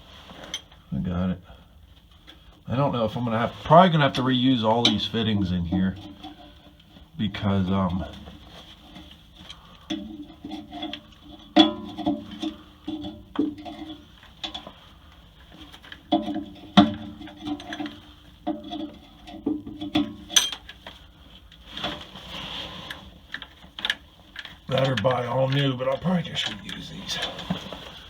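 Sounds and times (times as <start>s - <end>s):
metal parts and tools clinking: 15.8s - 20.8s.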